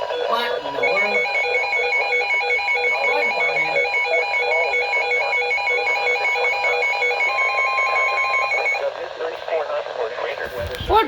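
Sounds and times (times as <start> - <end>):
warbling electronic alarm: 0.0 - 9.0
steady low beep: 0.2 - 8.8.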